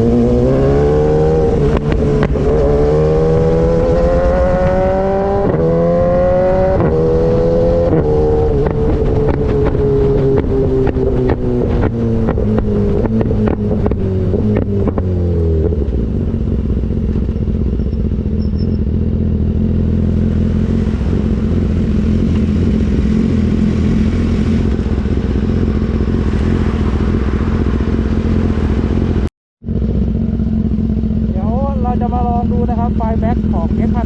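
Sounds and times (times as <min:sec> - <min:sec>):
motorcycle engine: 0:00.0 - 0:34.0
exhaust pops and crackles: 0:01.6 - 0:02.4, 0:07.9 - 0:17.5.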